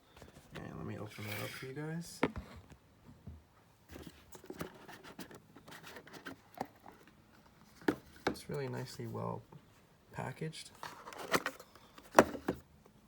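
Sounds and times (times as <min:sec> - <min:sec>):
packaging scraping and rustling: 0:01.0 - 0:01.8, 0:03.9 - 0:08.2, 0:10.8 - 0:12.6.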